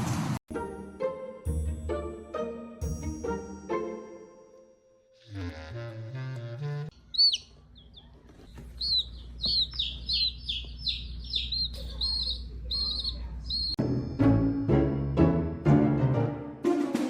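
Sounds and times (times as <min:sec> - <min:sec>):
small bird chirping: 0:06.9 - 0:13.8.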